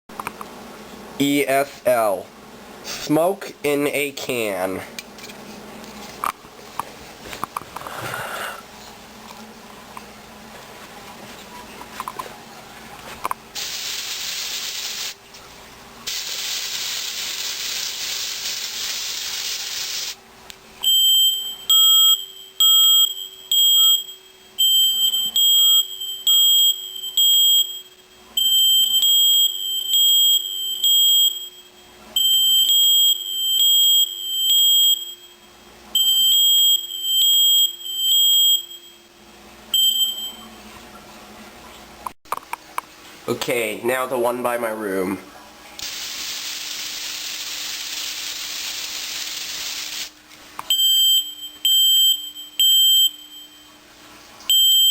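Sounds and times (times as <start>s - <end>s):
aerosol spray hissing: 13.6s - 15.2s, 16.1s - 20.2s, 45.8s - 50.1s
smoke alarm beeping: 20.8s - 39.1s, 39.7s - 40.5s, 50.7s - 53.8s, 54.5s - 54.9s.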